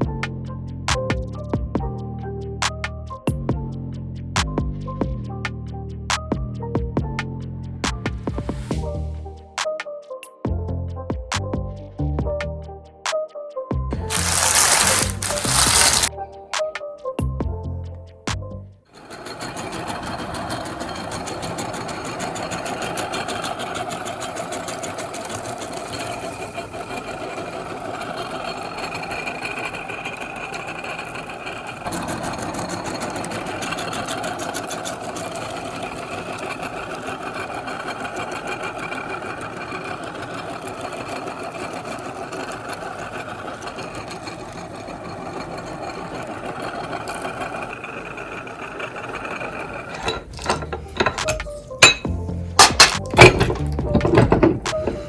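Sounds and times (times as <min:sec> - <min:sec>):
electric meat grinder rattling: 0:14.1 - 0:16.1, 0:19.0 - 0:49.9.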